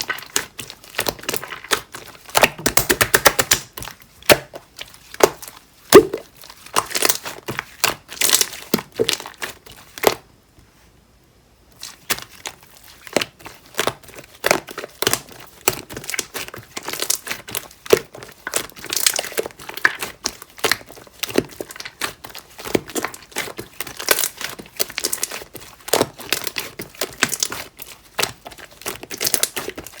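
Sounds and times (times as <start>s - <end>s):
slime squished by hand: 0.0s - 10.2s, 11.8s - 30.0s.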